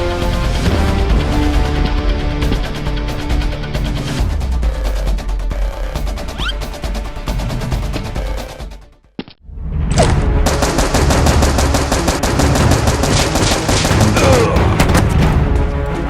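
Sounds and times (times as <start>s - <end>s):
music: 0.0s - 16.0s
automatic gunfire: 10.4s - 15.0s.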